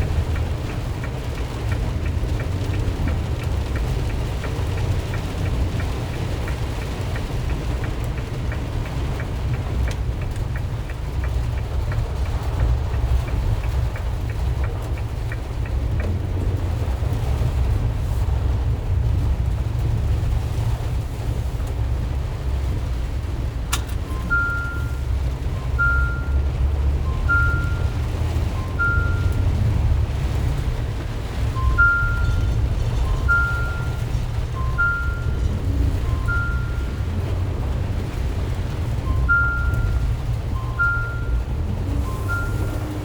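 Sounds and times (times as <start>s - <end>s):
faint regular ticking: 0.0s - 17.7s, 21.6s - 43.0s
road noise on wet roads: 0.0s - 43.0s
van engine rumble: 0.0s - 43.0s
click: 23.7s - 24.1s
short electronic beeps: 24.1s - 25.1s, 25.8s - 26.5s, 27.1s - 28.0s, 28.6s - 29.4s, 31.6s - 35.5s, 36.1s - 37.0s, 39.1s - 40.0s, 40.6s - 41.4s, 42.0s - 43.0s.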